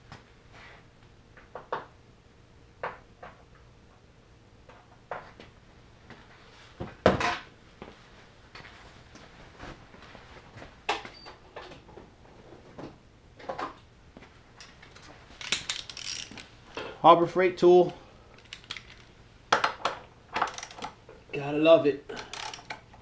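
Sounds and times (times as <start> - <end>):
rattling clicks: 14.6 - 16.5, 18.3 - 19.1, 20.4 - 21.0, 22.1 - 23.0
tools and metal parts clattering: 14.6 - 17.0, 18.3 - 21.2, 22.1 - 23.0.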